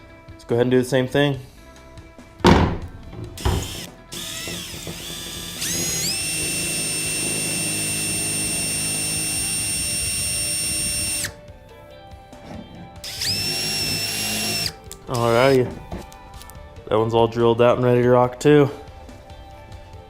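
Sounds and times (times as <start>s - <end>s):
electric drill boring into antler: 3.4s - 11.4s, 13.0s - 15.6s.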